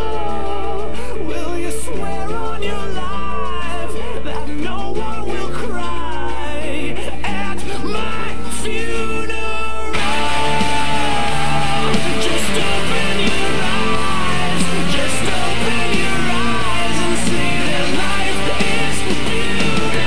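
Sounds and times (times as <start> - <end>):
person singing: 0.0 - 20.0
rock music with electric guitar: 9.9 - 20.0.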